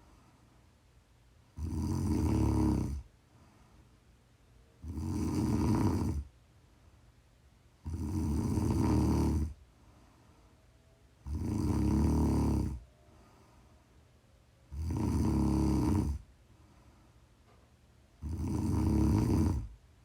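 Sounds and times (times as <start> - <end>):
quiet breathing: 0.0 - 20.0
rough snores: 1.6 - 3.1, 4.8 - 6.3, 7.8 - 9.6, 11.2 - 12.9, 14.7 - 16.3, 18.2 - 19.8.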